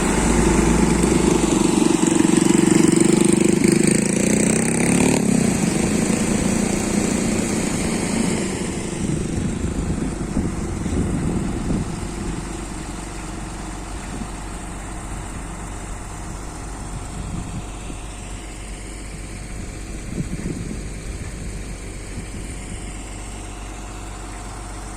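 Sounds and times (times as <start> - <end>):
heavy diesel engine running: 0.0 - 24.9.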